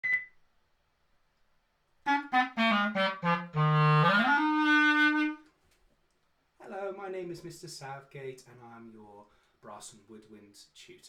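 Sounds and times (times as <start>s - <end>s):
clarinet playing: 2.1s - 5.5s.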